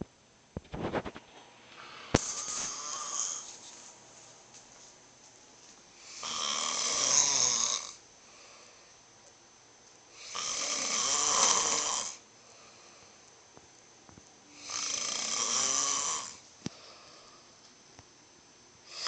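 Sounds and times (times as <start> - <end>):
man snoring: 2.0 - 3.5, 6.0 - 8.0, 10.2 - 12.8, 14.5 - 17.4.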